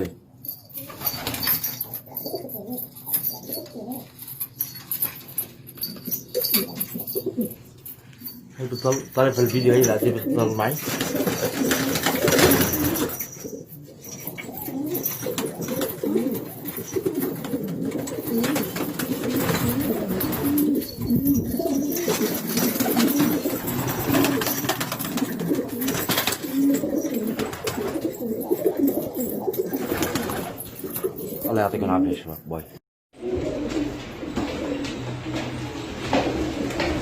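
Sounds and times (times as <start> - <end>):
pigeons cooing: 5.8 - 7.6, 10.0 - 31.5, 33.2 - 37.0.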